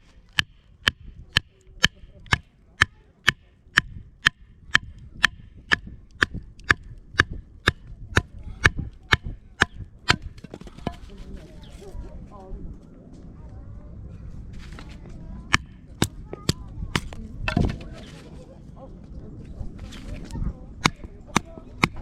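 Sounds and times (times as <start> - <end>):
wood chopping strikes: 0.0 - 11.4, 14.7 - 18.1, 20.8 - 22.0.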